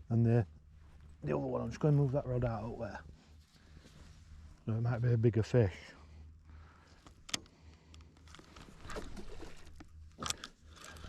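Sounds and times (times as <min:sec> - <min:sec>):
steady low hum: 0:00.0 - 0:11.0
rustling and scraping: 0:01.8 - 0:04.6, 0:08.2 - 0:11.0
fishing tackle clicking: 0:07.1 - 0:11.0.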